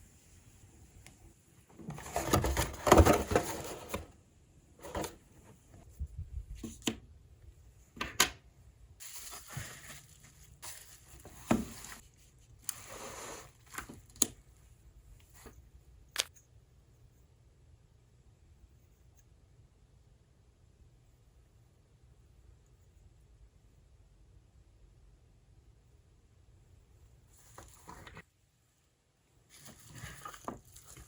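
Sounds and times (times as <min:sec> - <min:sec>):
cardboard and plastic rustling: 0:01.7 - 0:04.2, 0:04.8 - 0:05.9, 0:09.0 - 0:14.1, 0:29.5 - 0:31.0.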